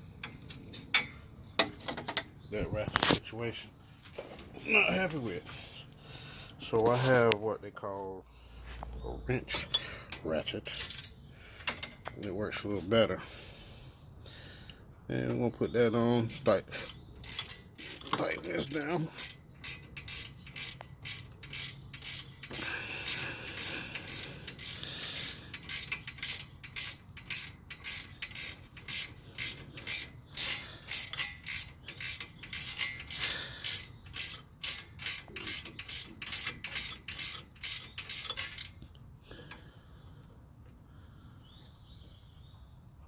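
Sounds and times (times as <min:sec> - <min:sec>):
ratcheting wrench clicking: 0:09.6 - 0:12.4, 0:16.2 - 0:38.8.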